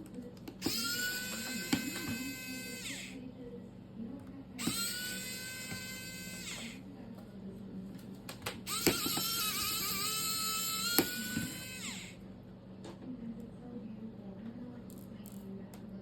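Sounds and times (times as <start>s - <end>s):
electric screwdriver whining: 0.6s - 3.2s, 4.6s - 6.8s, 8.7s - 12.2s.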